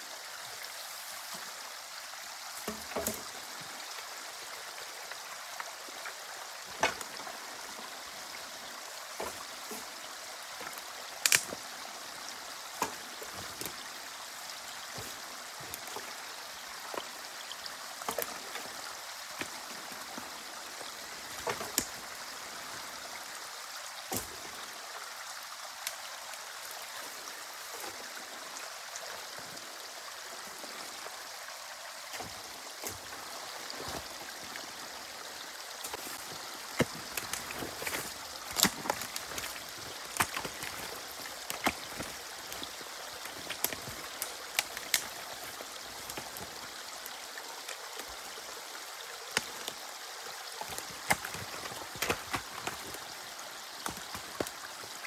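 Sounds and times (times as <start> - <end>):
water running and trickling: 0.0 - 55.0.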